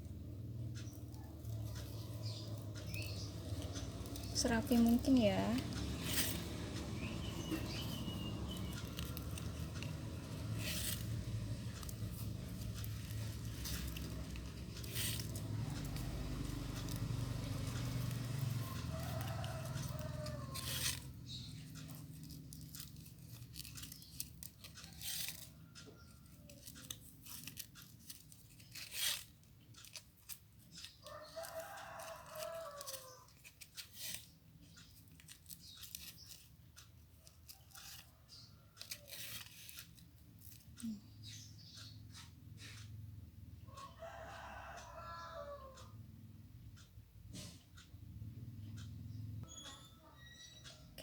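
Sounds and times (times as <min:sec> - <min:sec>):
ribbon and cardboard crinkling: 0:00.8 - 0:34.3, 0:35.0 - 0:41.0
rooster crowing: 0:15.2 - 0:21.2, 0:31.0 - 0:33.3, 0:43.7 - 0:46.0.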